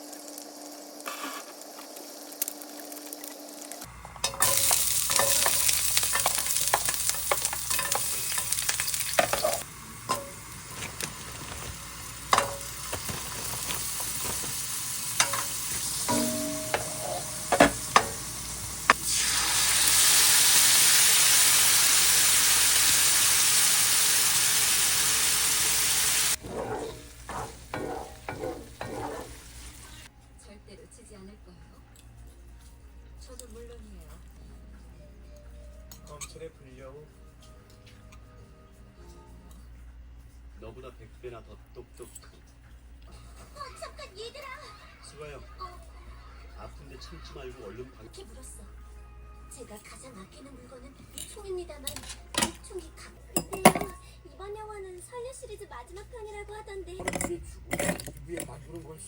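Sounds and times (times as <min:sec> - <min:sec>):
food sizzling in a pan: 0:00.0 - 0:30.1
utensils clicking and tapping: 0:04.2 - 0:19.0.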